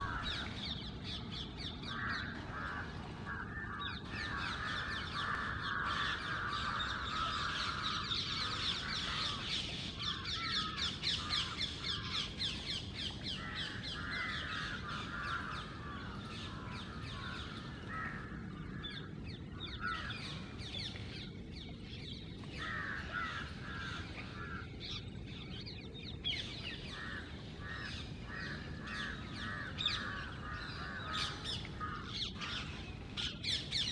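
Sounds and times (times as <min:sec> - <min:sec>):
crows cawing: 0:00.0 - 0:00.5, 0:01.9 - 0:12.1, 0:13.4 - 0:18.5, 0:22.6 - 0:24.7, 0:26.9 - 0:32.8.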